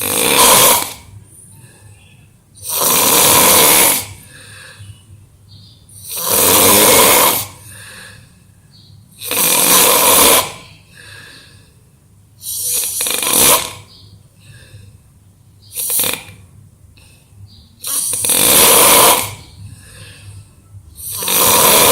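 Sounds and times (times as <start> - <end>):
person snoring loudly: 0.0 - 1.1, 2.6 - 4.4, 6.0 - 7.8, 9.2 - 10.8, 12.4 - 13.9, 15.8 - 16.4, 17.8 - 19.6, 21.0 - 21.9
quiet breathing: 1.0 - 2.7, 4.1 - 6.2, 7.5 - 9.2, 10.5 - 13.1, 13.8 - 16.0, 16.9 - 18.3, 19.3 - 21.9.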